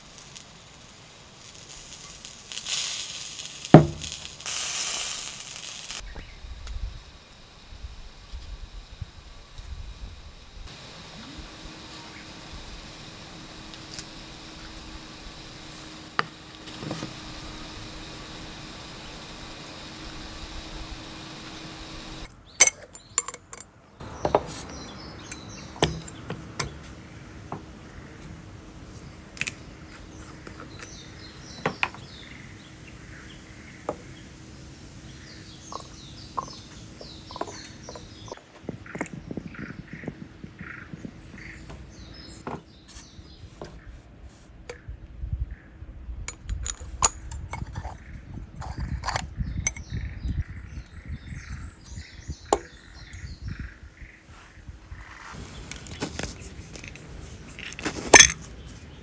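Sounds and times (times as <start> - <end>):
small birds chirping: 0.0 - 23.2, 24.0 - 45.9, 47.9 - 59.0
sharp clicks and knocks: 3.7 - 4.5.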